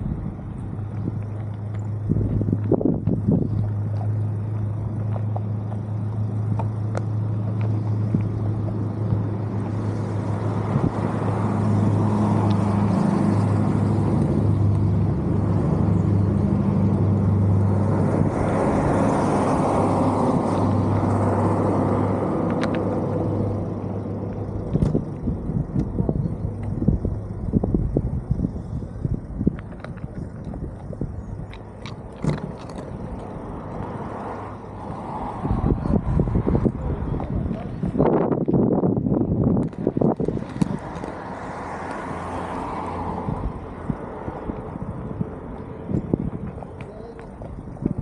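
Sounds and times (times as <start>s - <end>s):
wheels rolling on pavement: 0.0s - 48.0s
rc car motor humming: 20.9s - 42.3s.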